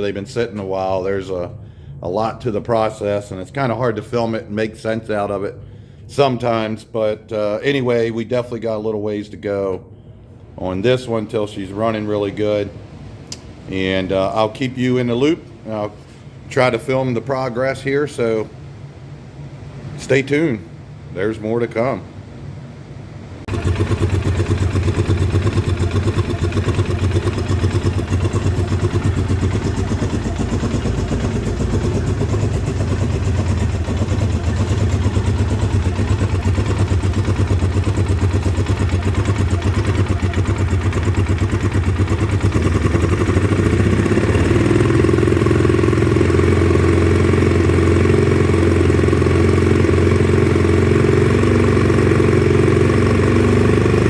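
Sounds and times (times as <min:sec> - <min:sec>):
atv engine running rough: 0:23.5 - 0:54.0.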